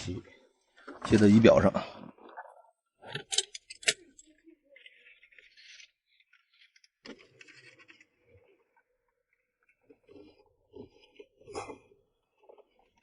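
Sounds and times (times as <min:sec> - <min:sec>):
hands scratching and rustling wires: 0:03.2 - 0:11.7.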